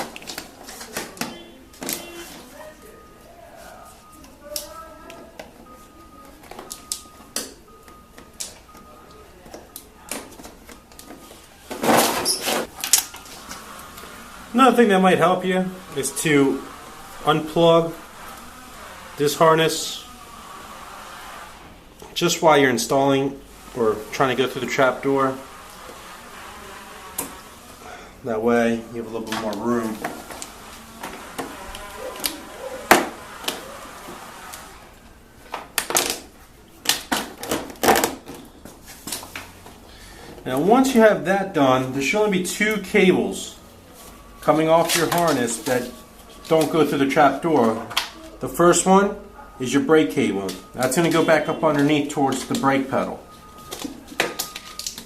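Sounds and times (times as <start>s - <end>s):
scraping rustle: 11.2s - 21.8s.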